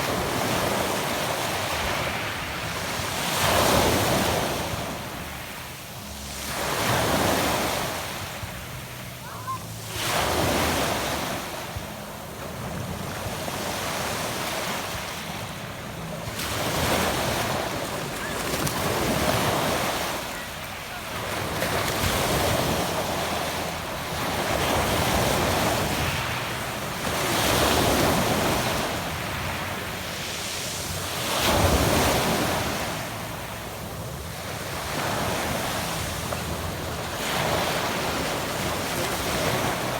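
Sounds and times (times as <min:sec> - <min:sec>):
waves breaking on pebble beach: 0:12.5 - 0:39.9.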